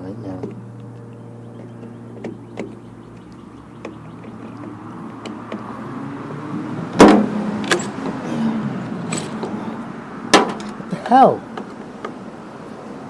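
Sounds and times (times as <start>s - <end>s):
recoil starter clicks and knocks: 1.6s - 5.7s, 7.0s - 8.2s, 10.3s - 10.9s, 11.5s - 12.2s.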